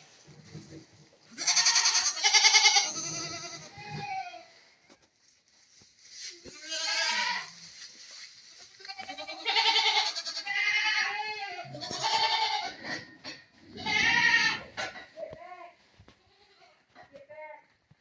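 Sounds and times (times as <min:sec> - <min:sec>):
goats bleating: 0:01.3 - 0:04.5, 0:06.5 - 0:07.6, 0:08.8 - 0:14.8.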